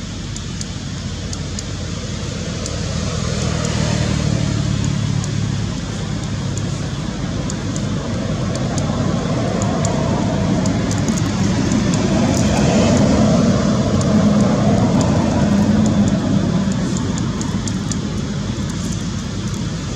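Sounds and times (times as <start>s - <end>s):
vehicle engine running: 0.0s - 19.9s
faint sharp clicks: 0.1s - 19.9s.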